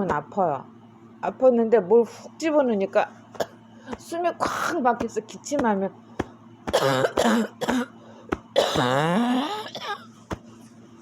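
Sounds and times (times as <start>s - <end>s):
person coughing harshly: 3.4s - 4.8s, 6.7s - 10.2s.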